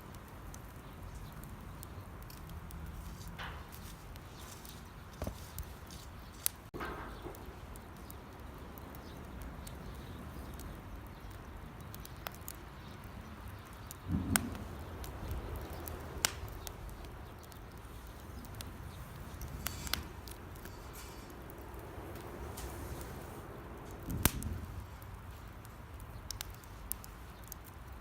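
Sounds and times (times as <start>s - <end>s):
campfire crackling: 0.0s - 28.0s
sharp pops from firewood: 13.2s - 23.1s, 23.9s - 25.0s.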